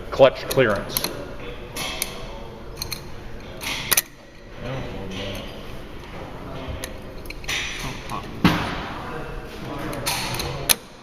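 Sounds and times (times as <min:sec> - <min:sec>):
metal parts clicking and clinking: 0:02.8 - 0:04.1.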